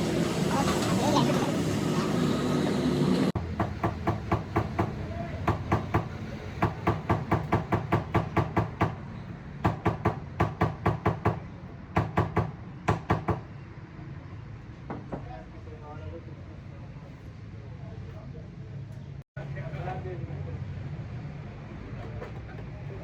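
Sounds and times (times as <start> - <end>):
sharp knocks in bursts: 3.4 - 9.0, 9.6 - 13.5.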